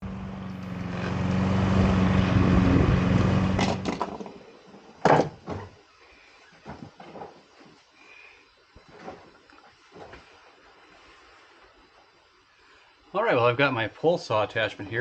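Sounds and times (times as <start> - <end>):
lawn mower engine running: 0.0 - 4.1.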